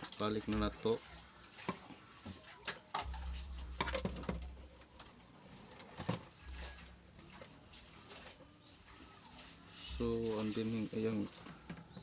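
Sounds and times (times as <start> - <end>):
low rumble: 3.1 - 5.0
plastic parts clicking and knocking: 3.8 - 4.6.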